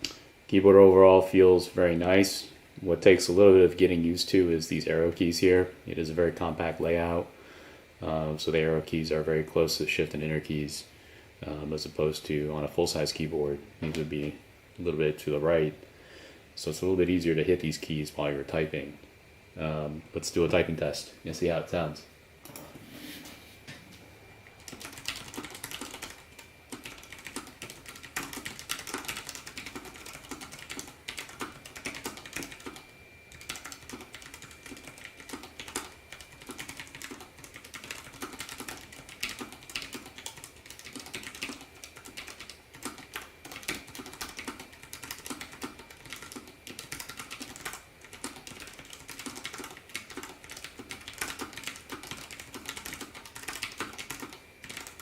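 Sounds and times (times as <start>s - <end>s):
mechanical keyboard typing: 24.6s - 55.0s.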